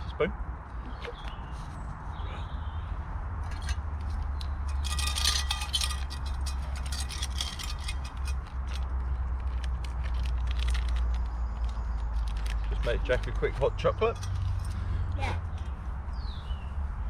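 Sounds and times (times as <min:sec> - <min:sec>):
metal spoon clinking on cookware: 0:03.5 - 0:03.8, 0:04.7 - 0:08.5.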